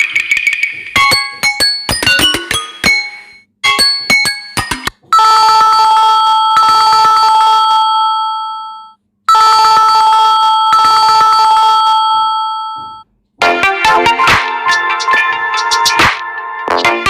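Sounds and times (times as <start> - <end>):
phone ringtone ringing: 1.0 - 13.0.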